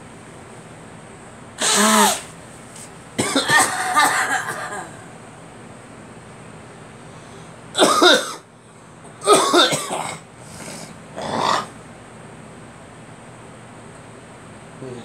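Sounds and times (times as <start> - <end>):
person coughing: 1.6 - 2.3, 3.2 - 5.0, 7.8 - 8.4, 9.2 - 10.2.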